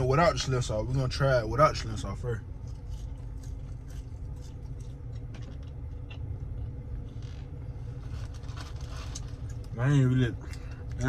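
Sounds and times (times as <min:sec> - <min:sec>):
steady low hum: 0:00.0 - 0:11.0
person chewing fries: 0:02.4 - 0:11.0.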